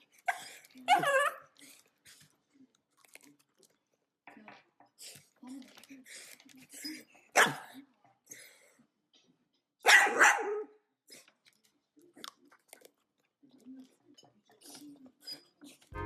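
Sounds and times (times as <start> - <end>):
dog barking: 7.3 - 7.8, 9.8 - 10.8.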